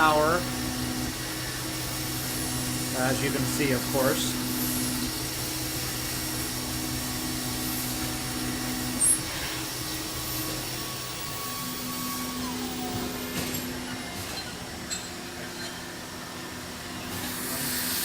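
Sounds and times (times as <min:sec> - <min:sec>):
milling machine hum: 0:00.0 - 0:18.0
hiss of machining: 0:01.1 - 0:14.2, 0:17.0 - 0:18.0.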